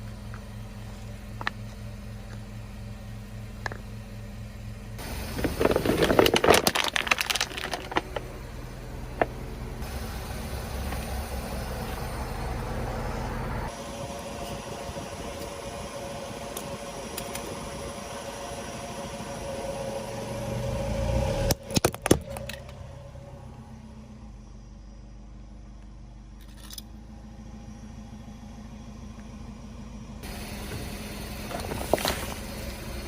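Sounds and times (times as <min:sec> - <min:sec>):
car engine running: 0:00.0 - 0:33.0
tyre crushing something crunchy: 0:05.1 - 0:08.3.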